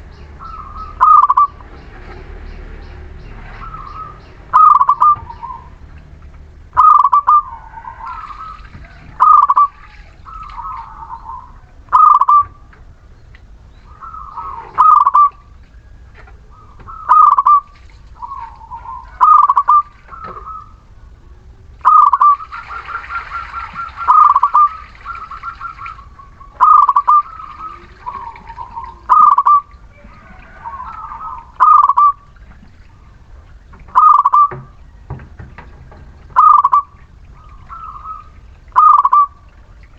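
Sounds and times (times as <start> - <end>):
raspy rapid bird trill: 0.0 - 1.8, 2.8 - 5.8, 6.7 - 12.6, 13.7 - 15.5, 16.5 - 21.2, 21.8 - 32.4, 34.0 - 34.6, 36.4 - 39.4
dove cooing: 0.0 - 39.9.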